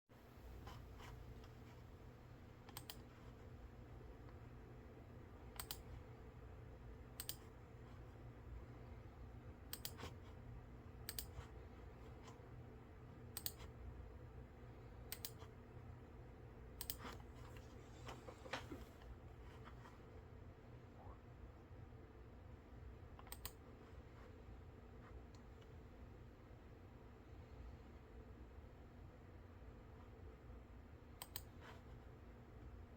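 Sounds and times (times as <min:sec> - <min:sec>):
faint low hum: 0:00.1 - 0:32.9
computer mouse clicking: 0:02.6 - 0:03.6, 0:05.4 - 0:06.1, 0:07.1 - 0:08.0, 0:09.6 - 0:10.4, 0:11.0 - 0:12.4, 0:13.3 - 0:13.8, 0:15.1 - 0:15.6, 0:16.8 - 0:19.8, 0:23.2 - 0:23.7, 0:31.1 - 0:31.9.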